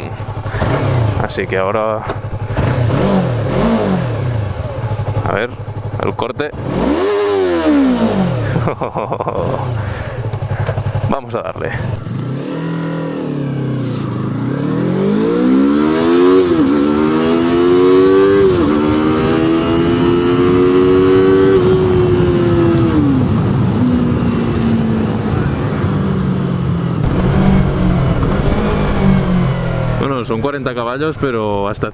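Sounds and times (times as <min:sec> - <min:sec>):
motorcycle engine accelerating: 0:00.0 - 0:31.6.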